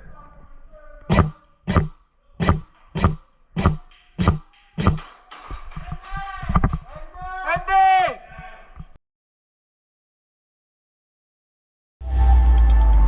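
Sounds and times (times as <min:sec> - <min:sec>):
steady drum beat: 0:01.1 - 0:05.0
pitched melodic sound: 0:12.0 - 0:13.0.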